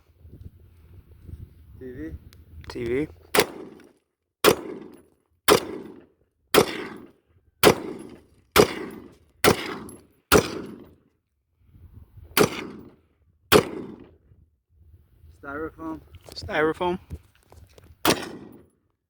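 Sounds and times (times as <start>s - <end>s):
rifle shots with echo: 3.3s - 11.0s, 12.4s - 14.2s, 18.0s - 18.7s.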